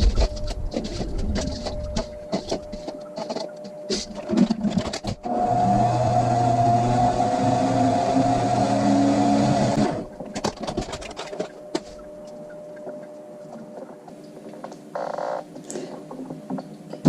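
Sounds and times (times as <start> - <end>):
salad spinner motor running: 5.2 - 10.1.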